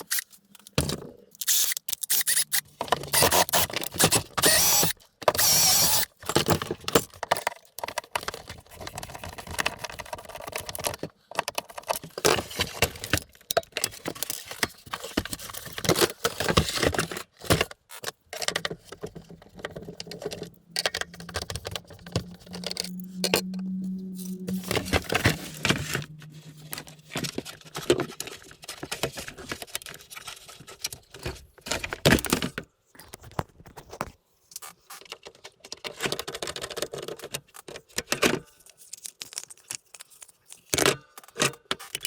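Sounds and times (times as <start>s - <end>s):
plastic parts and tools rattling: 0.0s - 42.0s
low steady hum: 19.6s - 28.8s.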